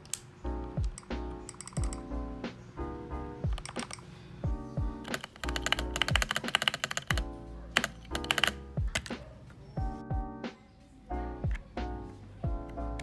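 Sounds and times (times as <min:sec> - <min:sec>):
mechanical keyboard keys clacking: 0:00.0 - 0:02.0, 0:03.5 - 0:04.1, 0:05.0 - 0:09.2
music with booming beat: 0:04.5 - 0:05.1.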